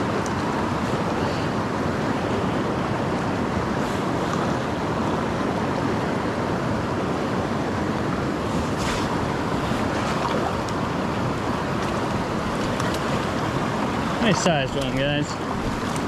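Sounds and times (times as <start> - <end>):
creek water rushing: 0.0 - 16.0.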